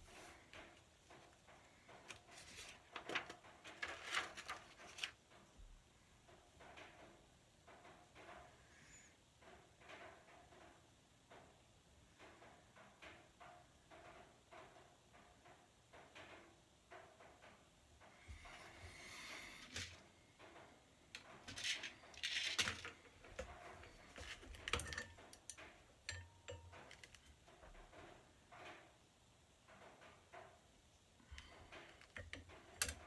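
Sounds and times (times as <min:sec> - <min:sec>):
small parts clicking and knocking: 0:12.2 - 0:33.0.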